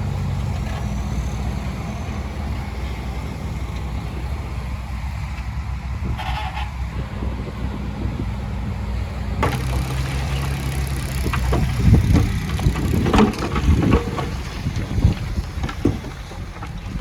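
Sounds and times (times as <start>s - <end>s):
heavy diesel engine running: 0.0s - 17.0s
clattering knocks: 9.4s - 17.0s.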